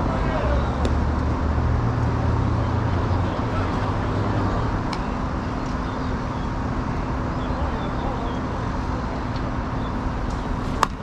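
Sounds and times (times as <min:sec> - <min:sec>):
low hum: 0:00.0 - 0:11.0
outdoor rumble and hiss: 0:00.0 - 0:11.0.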